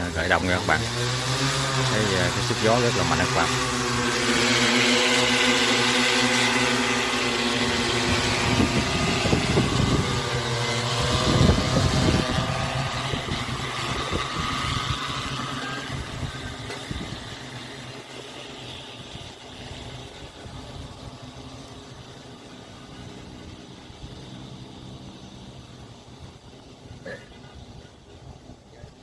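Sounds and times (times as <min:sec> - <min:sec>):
drone rotors humming: 0:00.0 - 0:29.0
wind buffeting microphone: 0:06.4 - 0:17.5.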